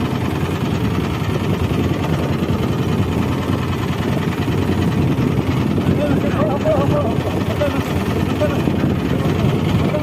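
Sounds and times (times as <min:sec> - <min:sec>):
boat engine droning with rattle: 0:00.0 - 0:10.0.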